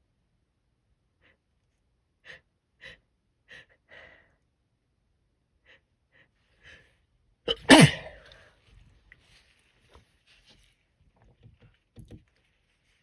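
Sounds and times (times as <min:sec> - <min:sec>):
person gasping before a sneeze: 0:07.5 - 0:08.4.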